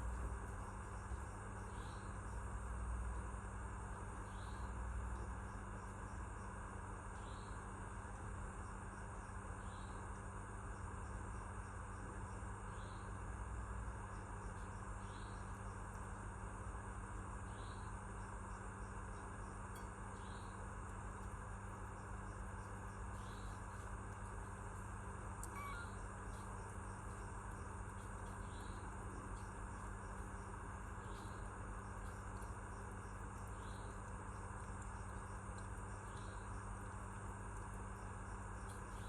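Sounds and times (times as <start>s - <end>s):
insect chorus: 0.0s - 39.0s
short high chirp: 25.5s - 26.0s.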